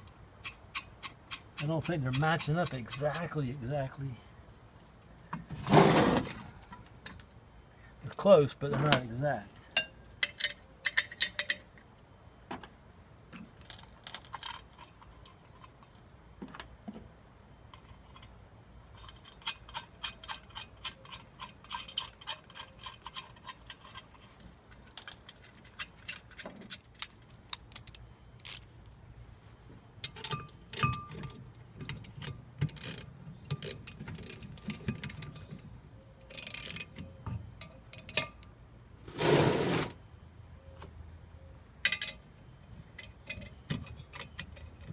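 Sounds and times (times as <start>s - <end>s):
metal parts clinking and scraping: 9.7s - 11.7s, 13.6s - 16.1s, 17.7s - 28.7s, 30.0s - 38.5s, 41.8s - 42.3s.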